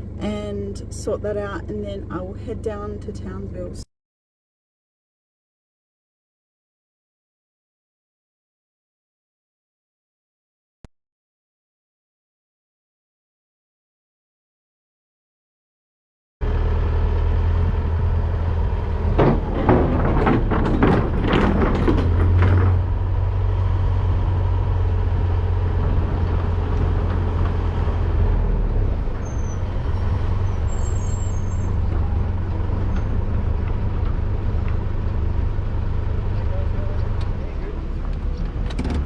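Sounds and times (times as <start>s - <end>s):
vehicle engine droning: 16.4s - 39.0s
sharp rattling knocks: 18.9s - 24.6s.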